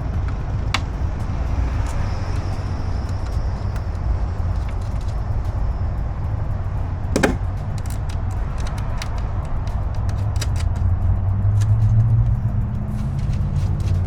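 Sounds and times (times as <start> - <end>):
steady low rumble: 0.0 - 14.0
small clicks of car door parts: 7.1 - 10.8
sharp knock: 7.2 - 7.5.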